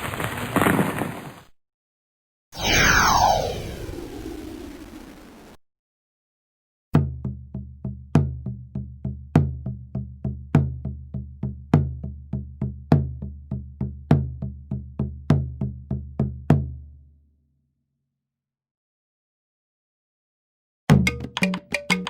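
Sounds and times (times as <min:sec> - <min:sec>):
drum and percussion rhythm: 0:07.0 - 0:16.8, 0:20.9 - 0:22.0.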